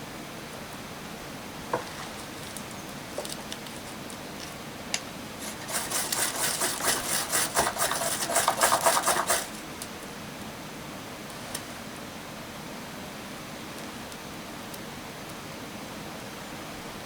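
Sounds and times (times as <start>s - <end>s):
firesteel scraping: 5.4s - 9.7s
steady rain-like hiss: 9.6s - 17.0s.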